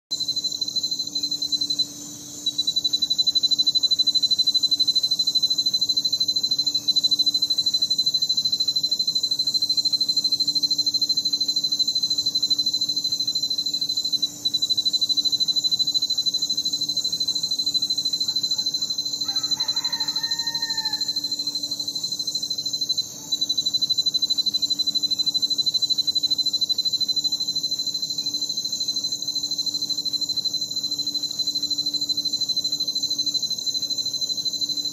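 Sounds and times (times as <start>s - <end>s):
crickets trilling: 0.1s - 34.9s
faint rooster crowing: 18.0s - 21.8s.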